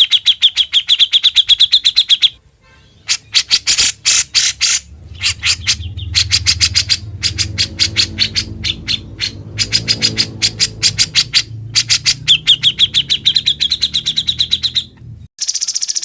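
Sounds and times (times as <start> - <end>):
songbird singing: 0.0 - 16.0
low steady hum: 4.8 - 13.3.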